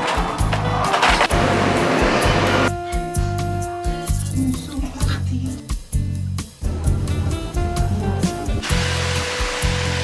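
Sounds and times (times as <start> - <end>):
music with bass beat: 1.5 - 8.6
loud even hiss: 8.6 - 10.0.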